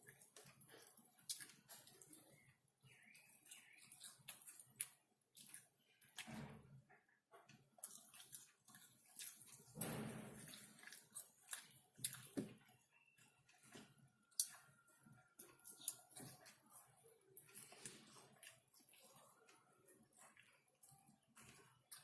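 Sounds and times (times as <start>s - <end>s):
chewing and wet mouth clicks: 0.0s - 6.3s, 7.8s - 9.7s, 10.4s - 12.5s, 14.3s - 14.8s, 15.4s - 22.0s.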